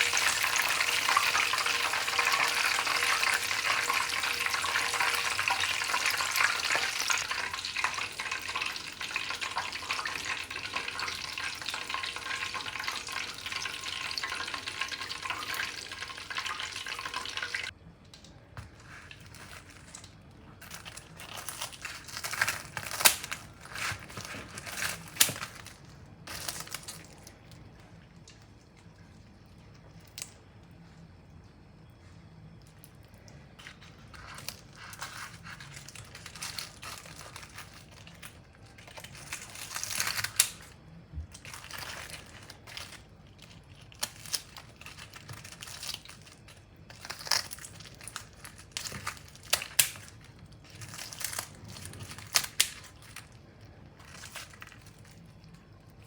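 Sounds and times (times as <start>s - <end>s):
rustling handling noises: 0.0s - 16.2s, 16.8s - 31.2s, 31.9s - 56.0s
chicken deep-frying in oil: 0.0s - 17.8s.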